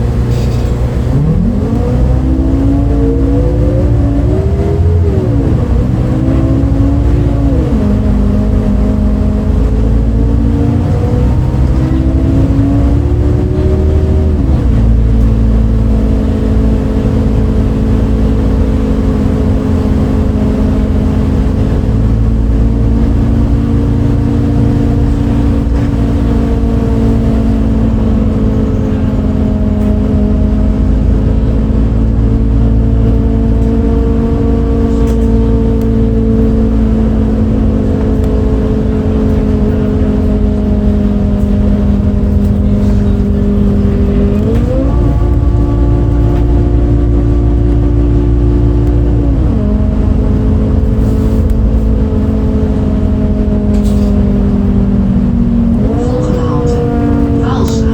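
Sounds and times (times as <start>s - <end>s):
bus diesel engine pulling: 0.0s - 57.9s.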